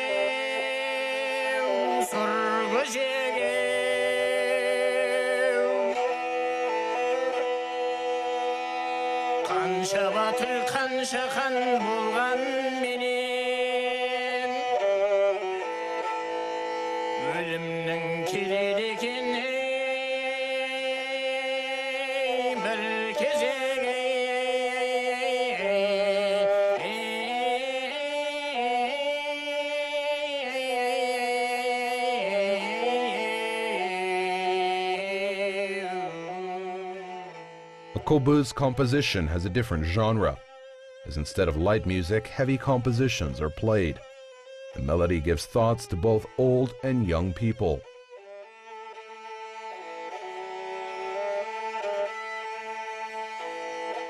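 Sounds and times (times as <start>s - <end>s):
bowed string fiddles playing: 0.0s - 54.0s.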